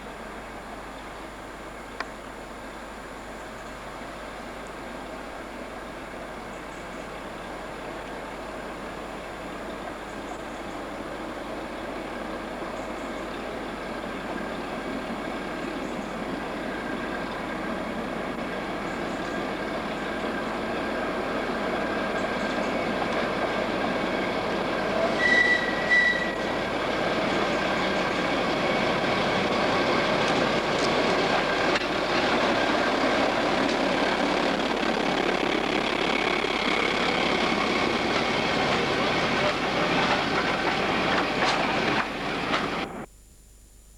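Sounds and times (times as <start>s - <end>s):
diesel locomotives running: 0.0s - 43.1s
high-pitched squeals: 24.9s - 26.6s.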